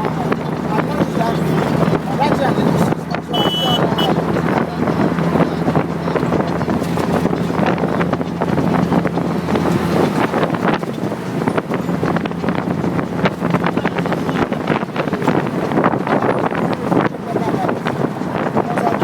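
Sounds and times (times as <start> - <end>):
vehicle engine humming: 0.0 - 19.0
wind buffeting microphone: 0.0 - 19.0.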